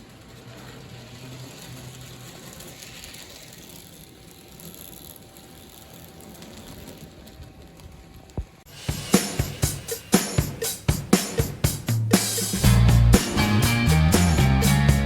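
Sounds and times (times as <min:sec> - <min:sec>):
toy train motor whirring: 0:00.0 - 0:08.2.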